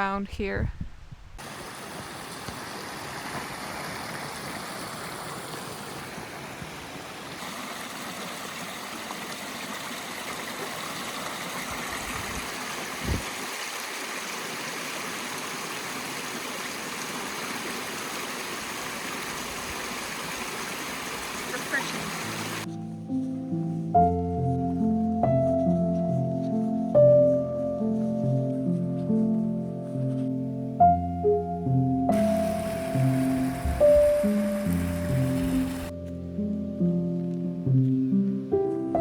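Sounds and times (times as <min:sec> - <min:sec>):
flowing water: 0:01.4 - 0:22.7, 0:32.1 - 0:35.9.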